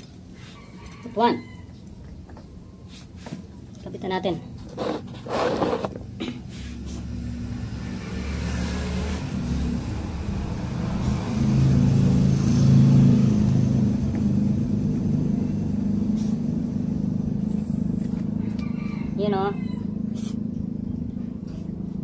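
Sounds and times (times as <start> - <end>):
low engine rumble: 9.1 - 22.0.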